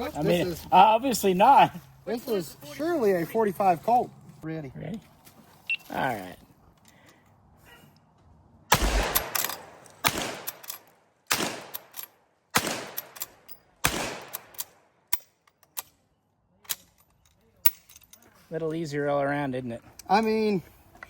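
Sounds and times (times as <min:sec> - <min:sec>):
rifle shots: 0:08.7 - 0:14.7.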